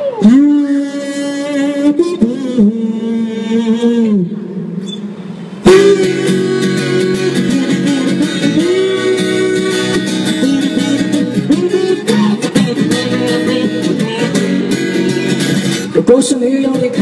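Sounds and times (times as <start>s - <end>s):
plucked guitar pop melody: 4.7s - 17.0s.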